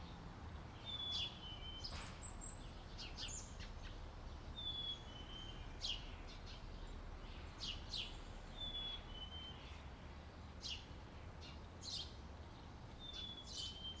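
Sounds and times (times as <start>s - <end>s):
songbirds chirping: 0.0s - 14.0s.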